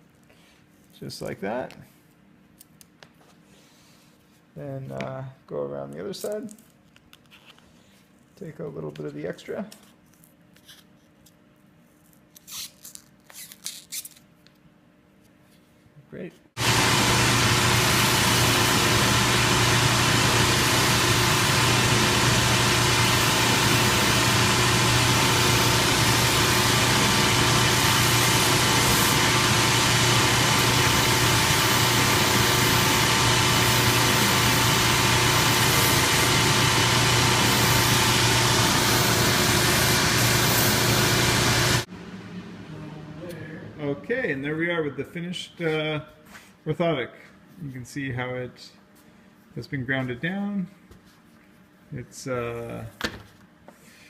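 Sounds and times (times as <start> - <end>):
electric grinder running: 16.6 - 41.9.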